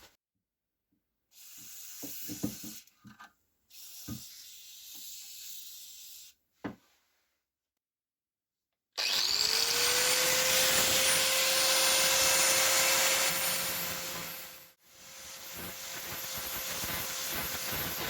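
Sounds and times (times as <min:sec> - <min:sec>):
aerosol spray can hissing: 0:01.3 - 0:02.9, 0:03.7 - 0:06.3, 0:15.6 - 0:18.0.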